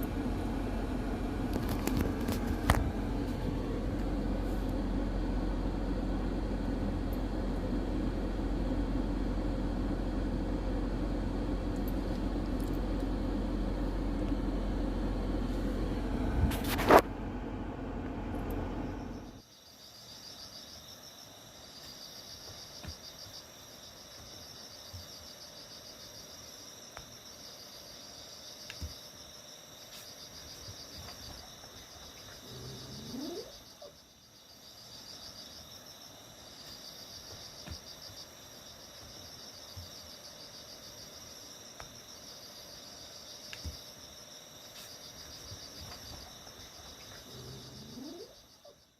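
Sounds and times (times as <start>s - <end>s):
rumbling noise: 0.0s - 19.4s
insects trilling: 18.9s - 48.9s.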